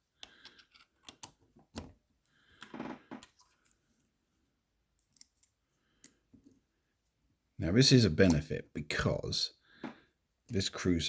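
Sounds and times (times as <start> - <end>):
lock pick scraping: 0.4 - 1.9.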